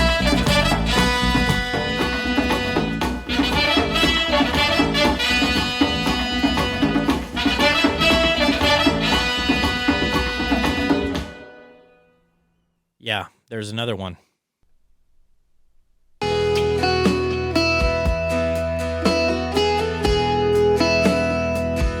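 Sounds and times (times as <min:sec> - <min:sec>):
music through loudspeakers: 0:00.0 - 0:11.4, 0:16.2 - 0:22.0.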